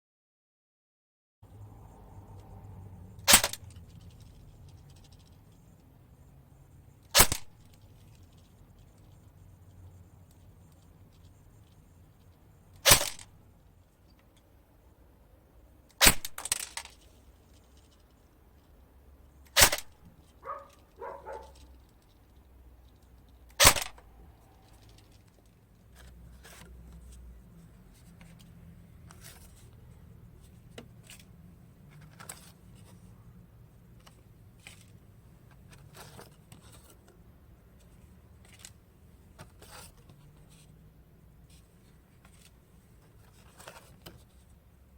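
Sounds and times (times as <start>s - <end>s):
handling rattles: 3.2s - 6.1s, 16.0s - 28.4s
airsoft gun shots: 3.3s - 3.6s, 7.2s - 7.5s, 12.8s - 13.2s, 16.0s - 16.5s, 19.6s - 20.0s, 23.6s - 24.0s.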